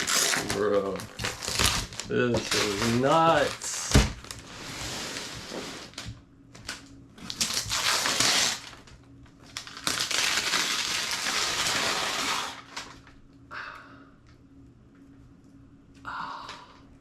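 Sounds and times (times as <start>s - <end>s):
wrapping paper crinkling: 0.0s - 4.5s, 6.6s - 13.2s.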